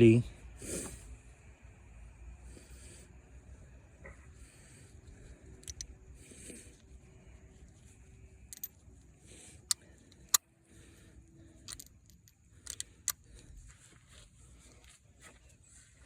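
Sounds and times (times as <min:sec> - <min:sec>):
metallic clicks of hand tools: 0:05.6 - 0:05.9, 0:08.5 - 0:08.8, 0:11.6 - 0:13.2.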